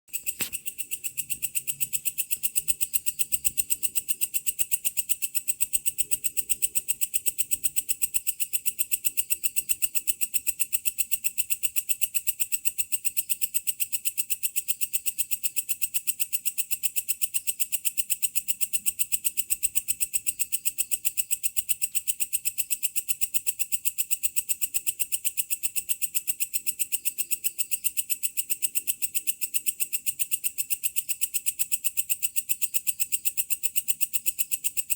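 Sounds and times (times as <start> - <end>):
bush cricket calling: 0.1 - 10.3.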